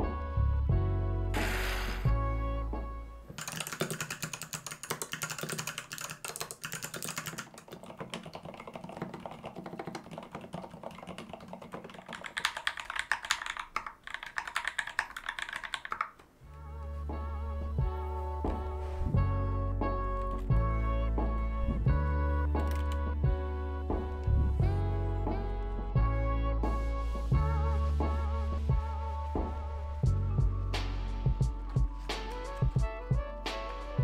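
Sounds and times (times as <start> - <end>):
background music: 0.0 - 4.8, 16.4 - 34.0
mechanical keyboard typing: 3.4 - 16.2.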